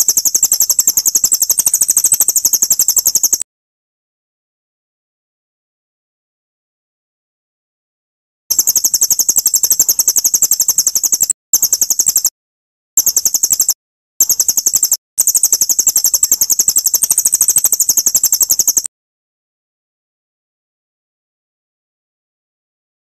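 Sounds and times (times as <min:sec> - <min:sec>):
songbird high-pitched trill: 0:00.0 - 0:03.4, 0:08.5 - 0:12.3, 0:13.0 - 0:18.9.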